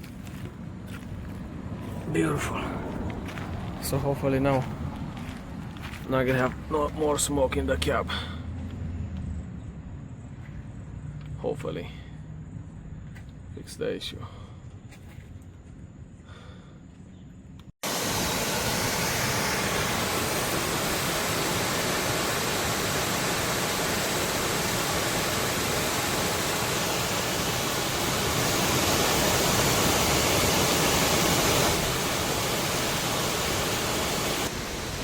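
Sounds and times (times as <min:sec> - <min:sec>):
loud steady rushing noise: 0:17.8 - 0:35.0.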